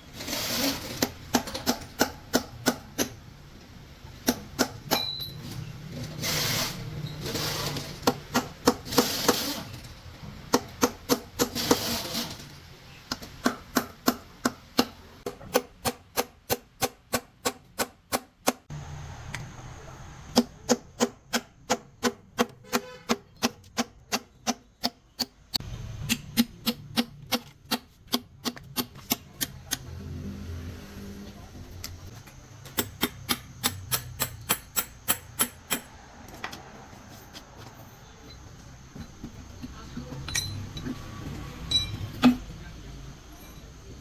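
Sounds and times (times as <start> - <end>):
hammer tapping on metal: 32.6 - 35.9.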